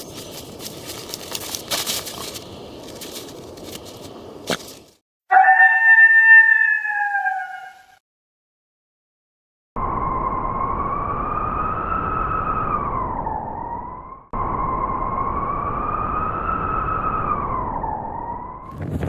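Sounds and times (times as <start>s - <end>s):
howling blizzard wind: 0.0s - 5.0s, 9.8s - 19.0s.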